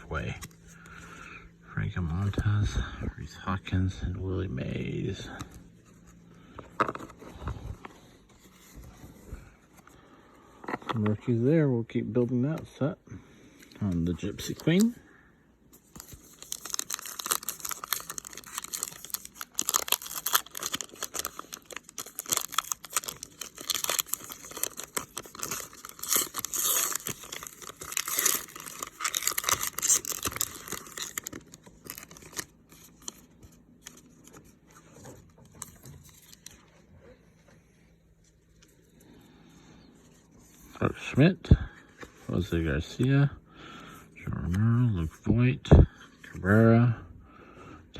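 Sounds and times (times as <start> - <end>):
cards rustling and clicking: 5.3 - 9.2, 13.6 - 15.0, 15.8 - 37.6
wrapper tearing and crinkling: 15.8 - 34.4.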